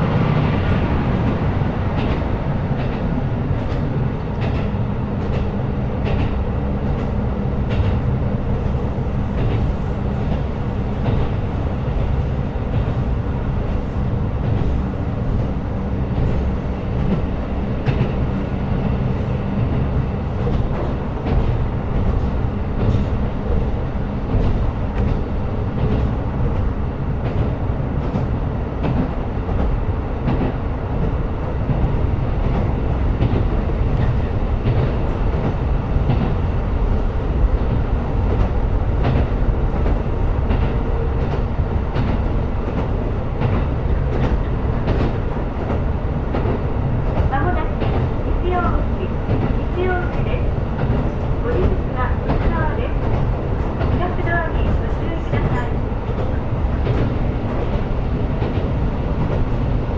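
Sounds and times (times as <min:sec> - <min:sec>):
train wheels rumbling on rail: 0:00.0 - 0:59.9.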